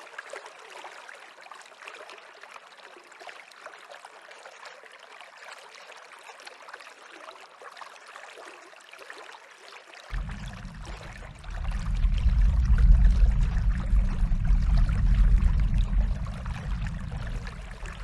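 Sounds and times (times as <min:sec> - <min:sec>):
stream water babbling: 0:00.0 - 0:18.0
deep low rumble: 0:10.1 - 0:18.0.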